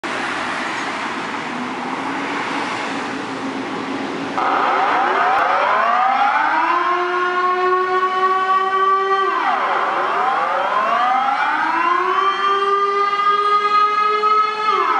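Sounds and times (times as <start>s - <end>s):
warning siren wailing: 4.4s - 14.9s.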